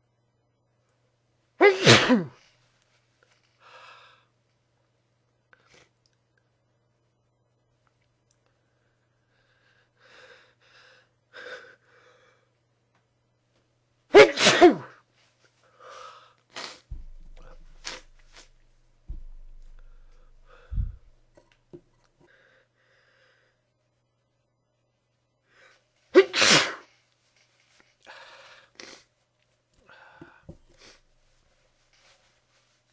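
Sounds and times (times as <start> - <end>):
person sneezing: 1.6 - 2.4, 14.1 - 15.0, 26.1 - 26.9
short breathy sounds: 19.2 - 21.2.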